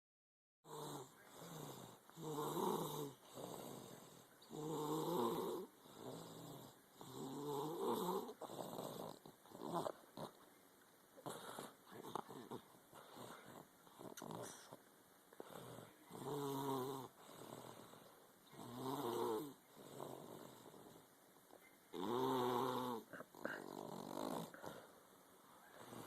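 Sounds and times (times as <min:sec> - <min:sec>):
person snoring: 0:00.7 - 0:10.4, 0:15.4 - 0:21.0, 0:21.9 - 0:24.9.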